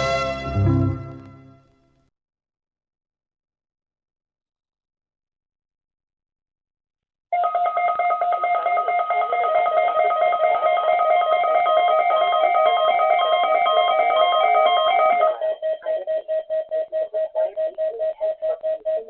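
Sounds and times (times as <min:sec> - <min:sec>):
electronic tone melody: 0:07.4 - 0:19.0.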